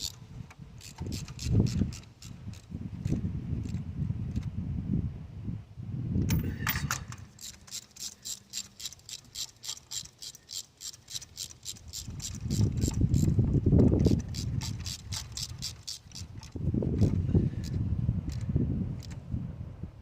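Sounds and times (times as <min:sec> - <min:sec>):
ratchet wrench clicking: 0:00.0 - 0:00.2, 0:00.8 - 0:04.4, 0:06.3 - 0:19.2.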